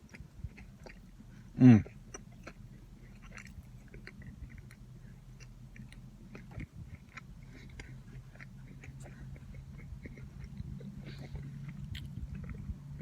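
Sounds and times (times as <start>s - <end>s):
low steady hum: 0.0s - 13.0s
person chewing food: 0.0s - 13.0s.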